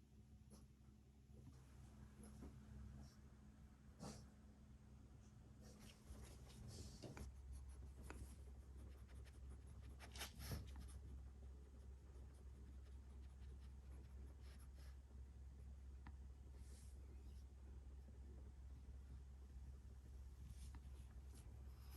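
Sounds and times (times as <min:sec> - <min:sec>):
steady low hum: 0:00.0 - 0:21.9
scratchy rubbing of fur: 0:05.7 - 0:11.1.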